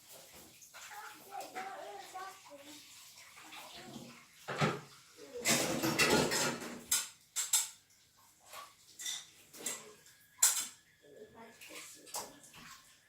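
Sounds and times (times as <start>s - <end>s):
hard objects knocking and clattering: 5.5s - 7.7s.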